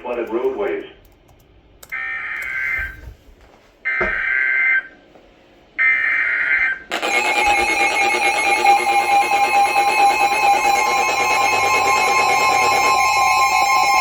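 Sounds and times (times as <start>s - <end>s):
steady attention tone: 5.8s - 14.0s
warbling data tones: 6.6s - 14.0s.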